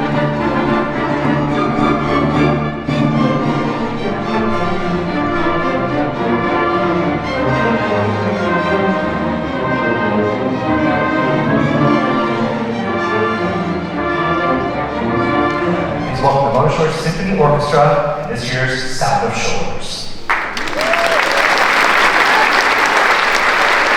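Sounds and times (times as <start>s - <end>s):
orchestra brass: 0.0s - 19.5s
orchestra strings: 0.0s - 23.9s.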